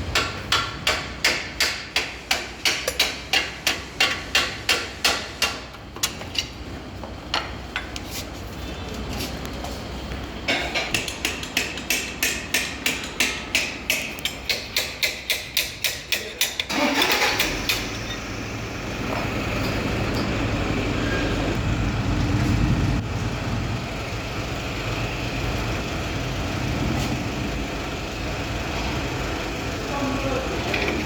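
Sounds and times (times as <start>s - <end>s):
low mechanical running hum: 17.6s - 31.0s.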